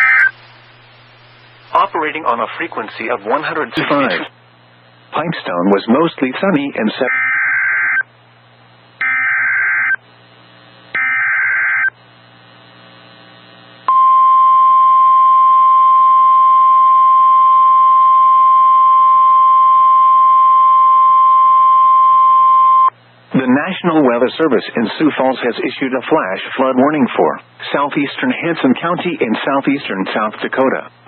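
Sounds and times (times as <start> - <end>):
harsh digital data warble: 0.0 - 2.8, 9.0 - 10.0, 11.0 - 11.9
faint radio hiss: 0.0 - 7.1, 10.0 - 11.0, 11.9 - 13.9, 22.9 - 31.0
steady warning alarm tone: 7.0 - 8.1, 9.0 - 10.0, 11.0 - 12.0, 13.9 - 22.9.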